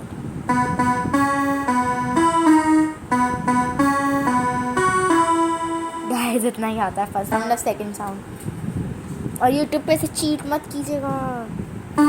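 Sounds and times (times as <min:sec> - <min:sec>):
piano melody single notes: 0:00.5 - 0:06.6, 0:07.3 - 0:08.1.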